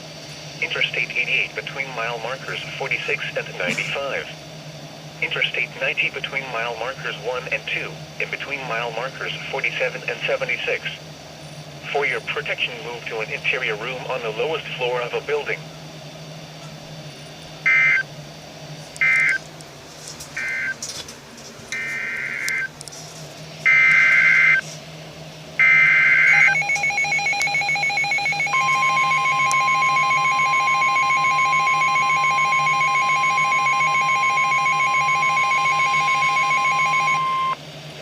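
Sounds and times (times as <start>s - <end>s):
steady warning alarm tone: 17.3s - 18.2s, 19.0s - 19.5s, 20.4s - 20.8s, 21.7s - 22.8s, 23.6s - 24.6s, 25.6s - 37.6s
pulsing electronic alarm: 17.6s - 18.1s, 19.0s - 19.4s, 20.4s - 20.8s, 21.7s - 22.8s, 23.6s - 24.6s, 25.6s - 37.6s
data screech bursts: 25.6s - 37.6s.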